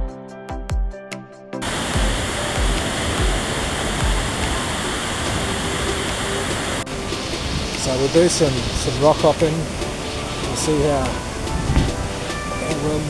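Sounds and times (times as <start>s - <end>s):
background music with beat: 0.0s - 13.0s
waterfall roaring: 1.6s - 13.0s.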